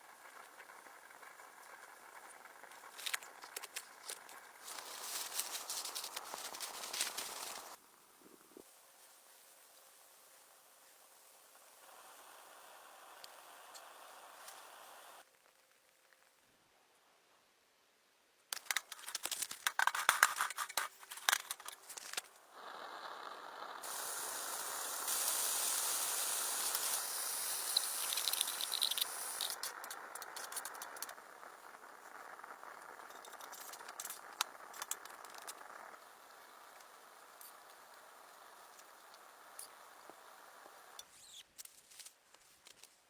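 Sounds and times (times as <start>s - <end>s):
steady hiss: 0.0s - 16.5s, 18.6s - 42.5s
handled objects clicking and rattling: 26.6s - 31.2s.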